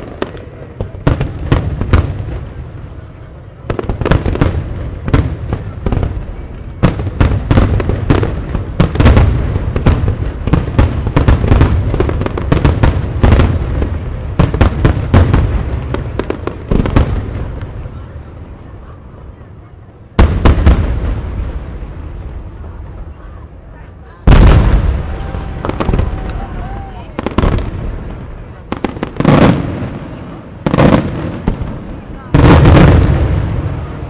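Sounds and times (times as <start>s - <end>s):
fireworks bursting: 0.0s - 34.0s.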